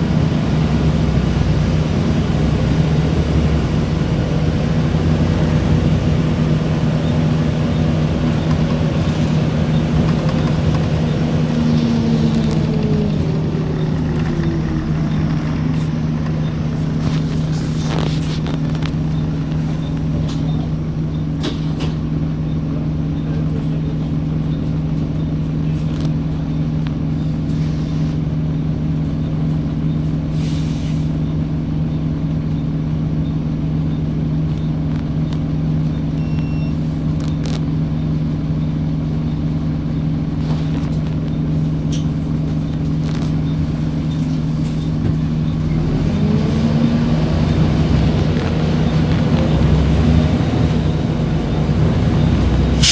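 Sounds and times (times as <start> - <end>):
large vehicle engine humming: 0.0 - 52.9
high squeals: 19.1 - 21.9, 42.2 - 45.0.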